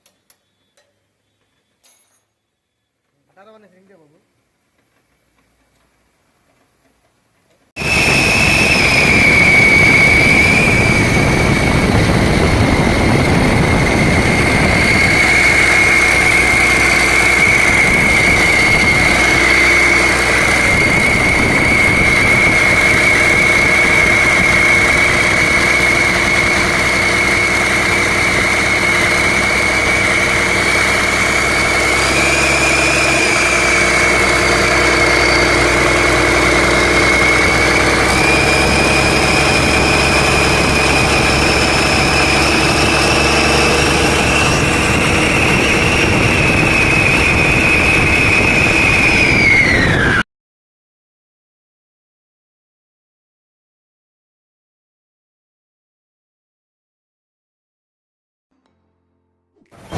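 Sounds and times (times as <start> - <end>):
excavator diesel engine running: 7.8 - 50.1
high-pitched whine: 7.8 - 50.2.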